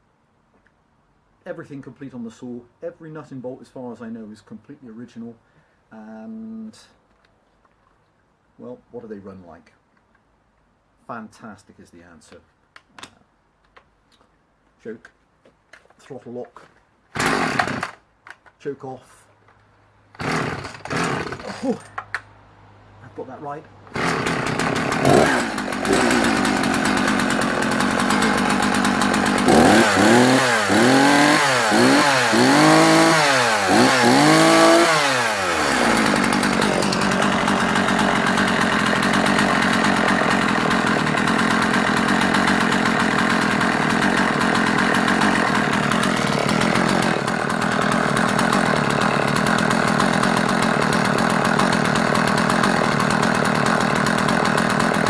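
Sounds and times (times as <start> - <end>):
chainsaw revving and idling: 17.2 - 18.0, 20.1 - 22.2, 23.1 - 55.0.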